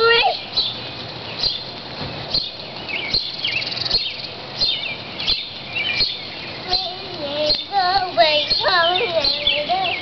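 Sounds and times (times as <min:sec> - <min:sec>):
young child's voice: 0:00.0 - 0:00.4, 0:06.7 - 0:10.0
birds chirping: 0:00.0 - 0:10.0
falling rain: 0:00.0 - 0:10.0.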